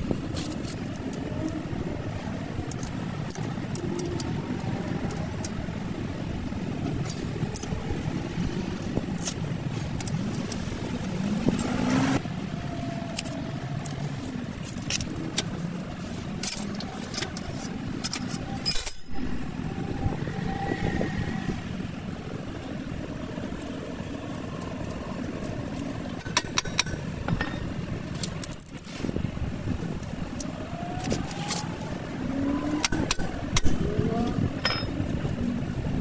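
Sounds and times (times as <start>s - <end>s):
car engine humming: 0.0s - 36.0s
sharp clicks and knocks: 26.1s - 28.9s.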